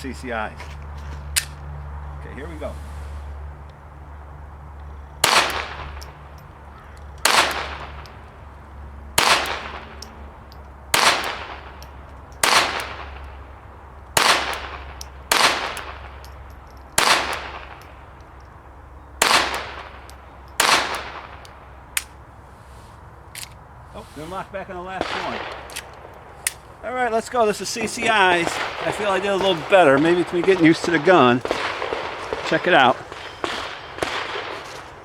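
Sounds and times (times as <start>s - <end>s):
pistol shots: 5.1s - 22.2s, 24.9s - 35.0s.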